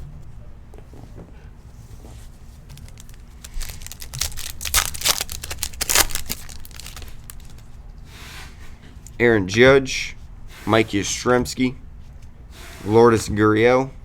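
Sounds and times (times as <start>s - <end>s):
wrapper tearing and crinkling: 2.6s - 7.6s.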